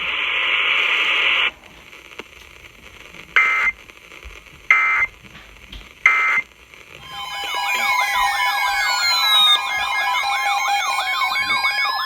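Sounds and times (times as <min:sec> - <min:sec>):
digital data bursts: 0:07.0 - 0:12.0.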